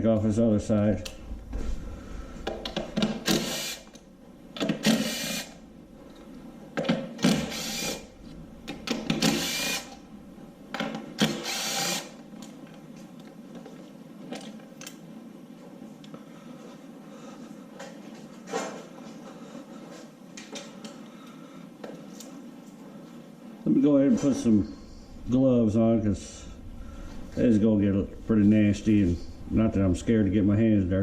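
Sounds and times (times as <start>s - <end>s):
impact gun bursts: 3.0s - 3.9s.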